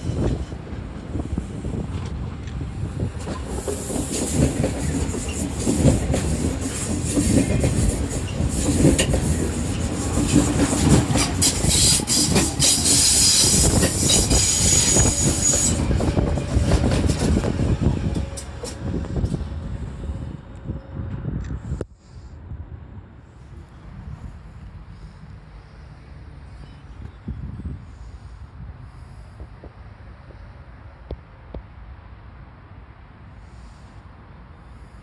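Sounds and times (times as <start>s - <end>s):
train wheels clattering: 0.0s - 19.9s
high steady train tone: 0.0s - 35.0s
train hissing rush: 0.0s - 35.0s.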